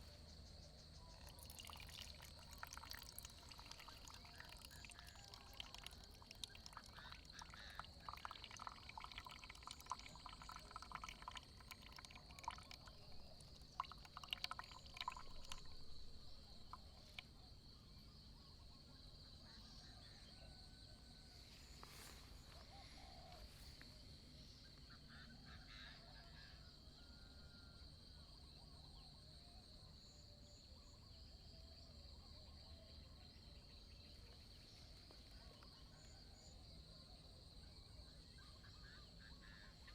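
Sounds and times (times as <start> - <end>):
faint high-pitched hum: 0.0 - 39.9
water trickling into coffee: 1.0 - 17.3.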